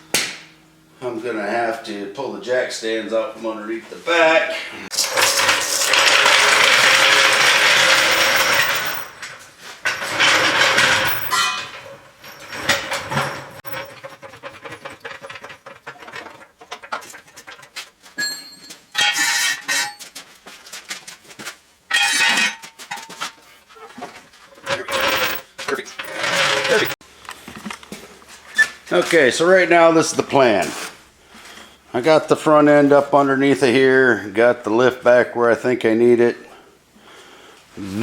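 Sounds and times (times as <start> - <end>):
metal clanks and clicks: 4.9 - 17.7, 24.6 - 27.9
ringing metallic tones: 18.2 - 20.0.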